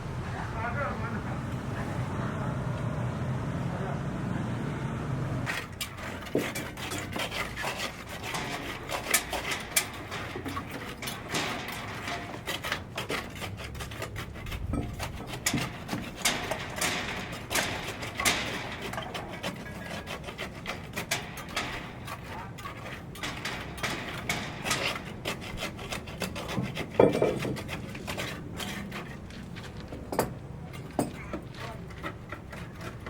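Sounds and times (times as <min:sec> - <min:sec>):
knocking and tapping of hand work: 0:05.8 - 0:28.7, 0:29.6 - 0:33.0.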